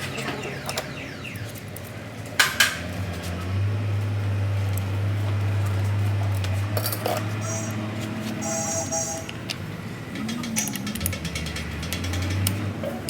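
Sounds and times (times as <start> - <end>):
metal parts clinking: 6.8 - 7.3, 10.3 - 12.6.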